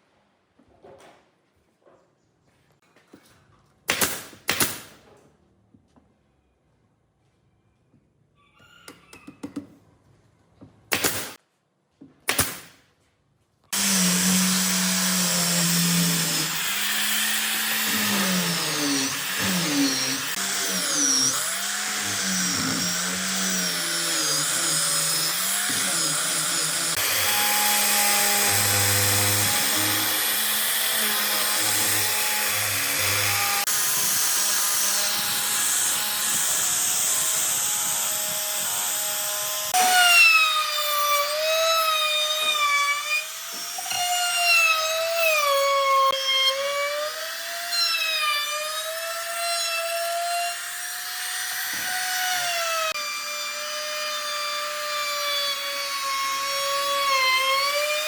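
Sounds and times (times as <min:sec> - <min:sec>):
power tool working wood: 0:13.8 - 0:58.0.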